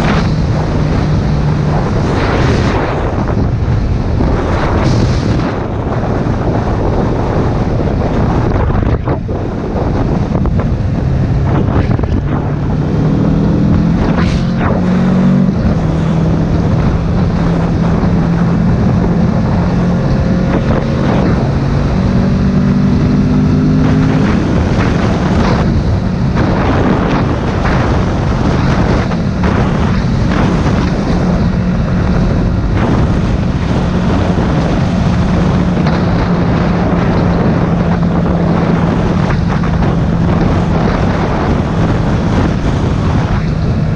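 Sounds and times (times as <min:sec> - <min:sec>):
motorcycle engine at speed: 0:00.0 - 0:43.9
wind buffeting microphone: 0:00.0 - 0:43.9.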